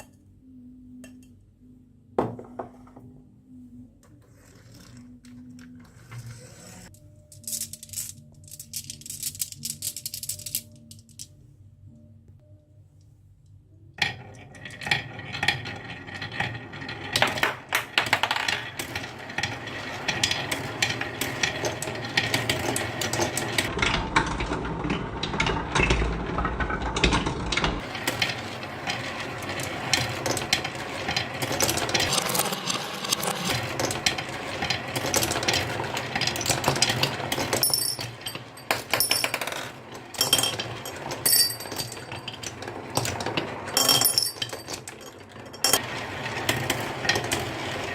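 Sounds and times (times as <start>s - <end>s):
marbles rattling down a wooden track: 14.0s - 24.4s, 25.2s - 47.9s.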